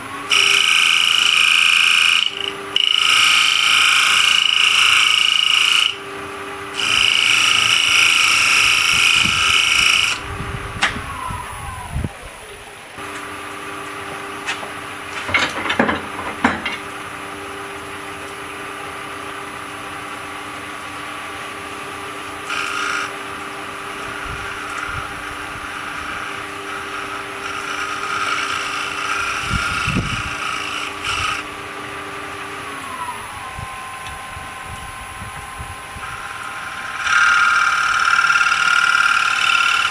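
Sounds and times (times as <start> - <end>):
turning tool cutting wood: 0.0 - 11.7, 22.4 - 31.5, 36.0 - 39.9
wood lathe motor whine: 0.0 - 13.1, 20.9 - 39.9.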